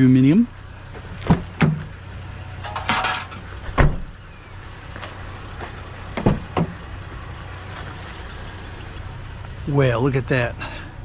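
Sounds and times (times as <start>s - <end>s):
vehicle engine humming: 0.0s - 11.0s
scrap pieces knocking: 2.6s - 3.4s.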